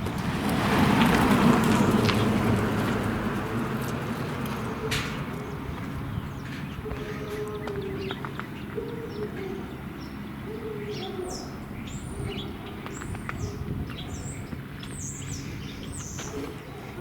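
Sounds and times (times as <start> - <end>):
small birds chirping: 4.4 - 17.0.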